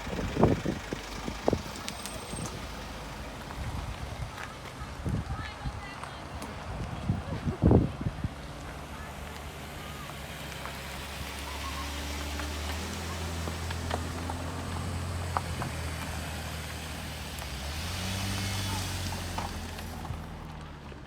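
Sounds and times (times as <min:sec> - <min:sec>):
car engine hum: 0:00.0 - 0:21.0
road and wind noise: 0:00.0 - 0:21.0.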